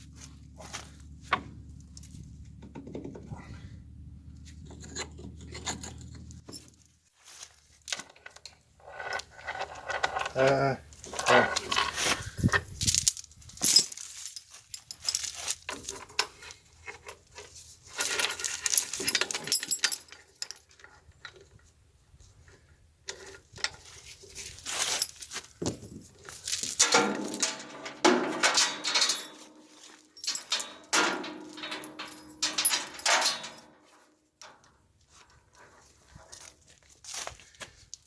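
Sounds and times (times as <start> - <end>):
metal tools clinking and clattering: 7.8 - 20.9, 23.6 - 34.8.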